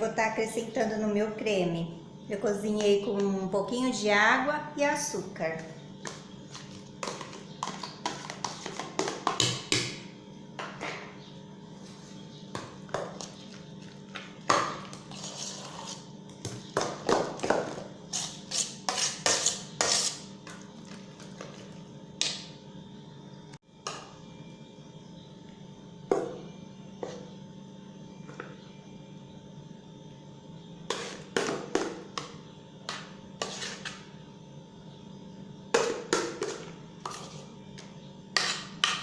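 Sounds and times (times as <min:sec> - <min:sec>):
utensil scraping a bowl: 0:06.1 - 0:09.1, 0:14.8 - 0:16.2, 0:18.1 - 0:20.3, 0:30.9 - 0:31.5, 0:32.9 - 0:34.1, 0:35.8 - 0:37.6.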